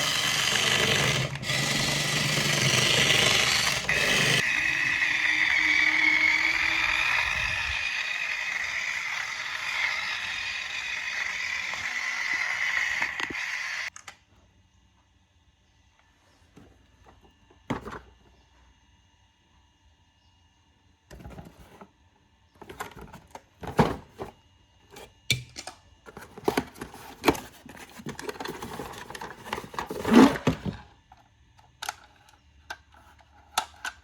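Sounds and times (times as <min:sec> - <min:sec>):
toy car motor whirring: 0:00.0 - 0:14.0.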